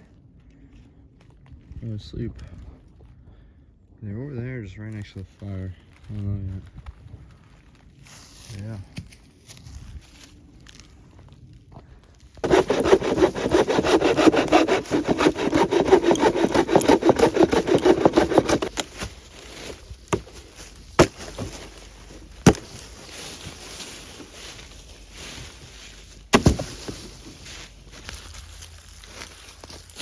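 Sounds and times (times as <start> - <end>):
hand saw cutting wood: 12.4 - 22.8, 25.4 - 28.2.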